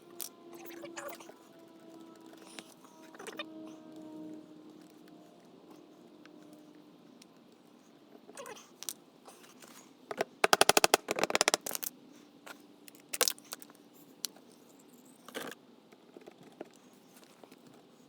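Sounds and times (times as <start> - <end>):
fast sharp clicks: 10.4 - 11.9.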